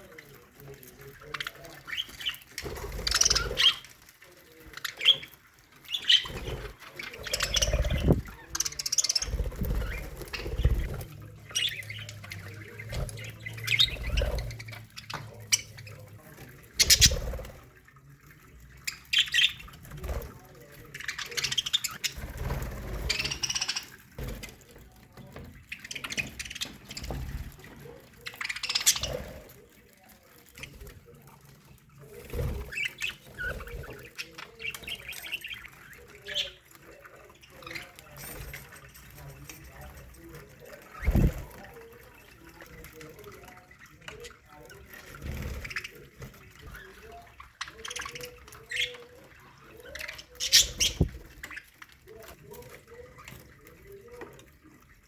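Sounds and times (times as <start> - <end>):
budgerigars chattering: 1.4 - 4.0, 4.8 - 17.4, 18.8 - 19.9, 22.9 - 24.2, 49.8 - 51.7.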